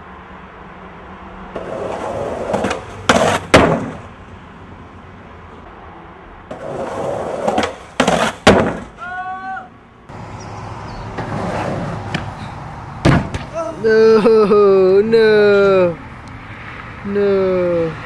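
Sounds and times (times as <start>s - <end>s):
skateboard wheels rolling: 1.3s - 4.4s, 5.3s - 13.6s
skateboard clacks: 1.6s - 4.1s, 6.5s - 9.0s, 11.1s - 12.4s.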